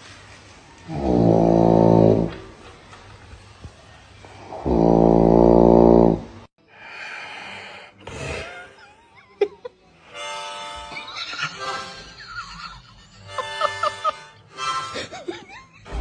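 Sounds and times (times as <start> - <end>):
loud buzzing snore: 0.9 - 2.4, 4.3 - 6.5.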